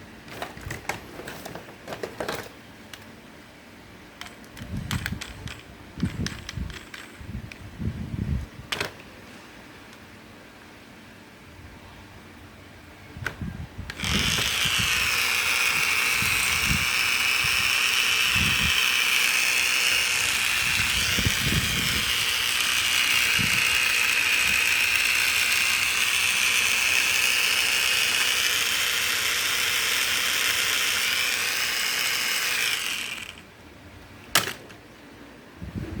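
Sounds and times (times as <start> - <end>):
small electric motor whirring: 13.9 - 33.5.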